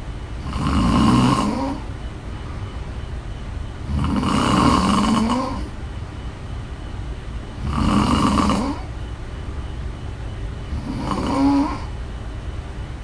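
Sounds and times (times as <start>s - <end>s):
woman snoring: 0.4s - 1.9s, 3.9s - 5.7s, 7.6s - 8.9s, 10.7s - 12.0s.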